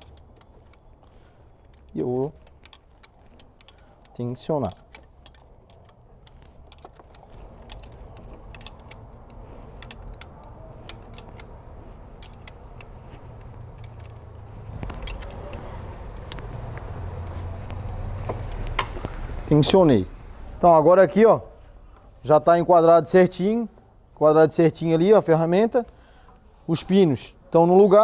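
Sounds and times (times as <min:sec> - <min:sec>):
metallic clicks of hand tools: 0:00.0 - 0:16.9, 0:17.6 - 0:19.8.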